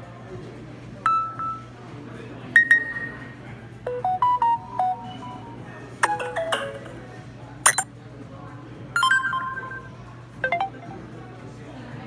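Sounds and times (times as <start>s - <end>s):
phone notification ping: 7.7s - 7.9s, 9.0s - 11.1s.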